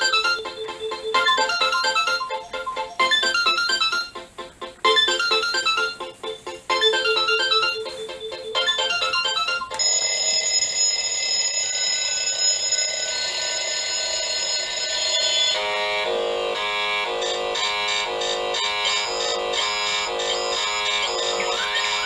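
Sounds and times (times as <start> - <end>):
shrill held alarm tones: 0.0 - 4.1, 6.7 - 22.0
beeped alarm melody: 0.0 - 22.0
pulsing alarm buzzer: 9.8 - 22.0.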